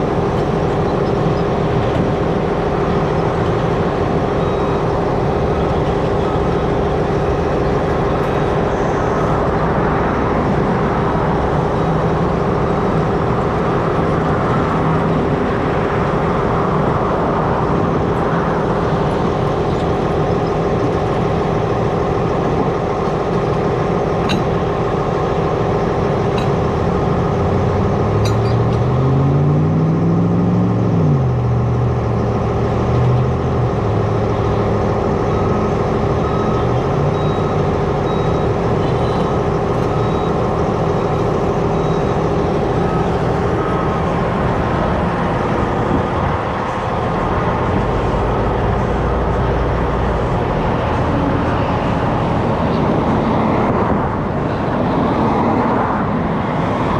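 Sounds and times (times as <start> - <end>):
vehicle engine and road noise: 0.0 - 56.9
engine revving and shifting gear: 27.2 - 32.0.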